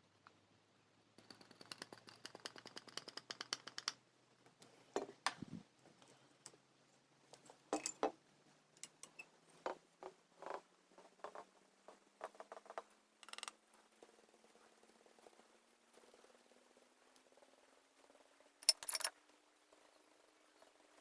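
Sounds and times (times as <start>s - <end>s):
small toy parts clicking and tapping: 1.2s - 4.0s, 13.2s - 13.6s, 18.6s - 19.1s.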